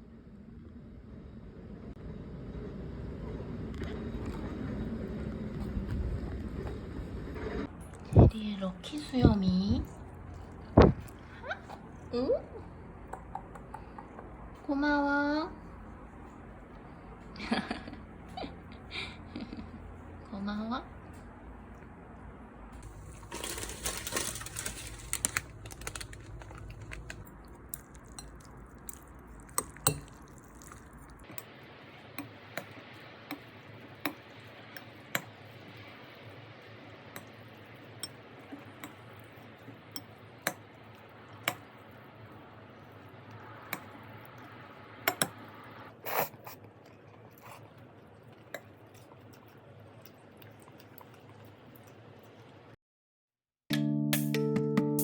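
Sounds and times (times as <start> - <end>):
rustling noise: 22.8 - 27.2.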